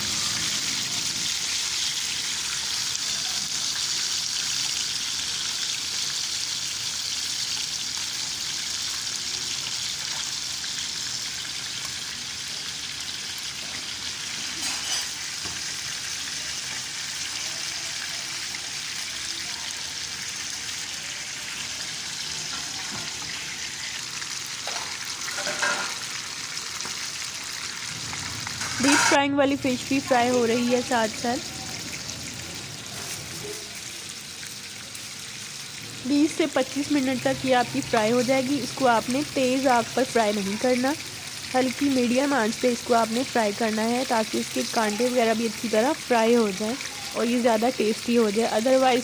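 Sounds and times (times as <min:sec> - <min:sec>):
fish sizzling in hot oil: 0:00.0 - 0:49.0.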